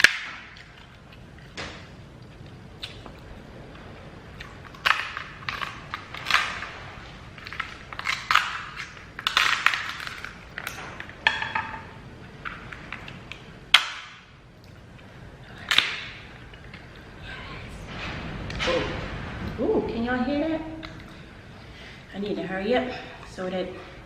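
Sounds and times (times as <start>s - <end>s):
shells cracking and crunching: 0.0s - 3.2s, 4.4s - 17.1s
wet chewing and smacking: 0.0s - 3.3s.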